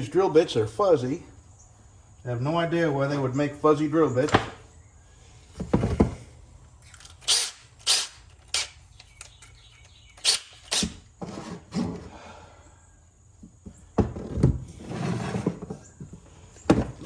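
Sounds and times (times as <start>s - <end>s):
tools clattering: 5.6s - 11.1s
tools clicking and knocking: 6.8s - 11.0s.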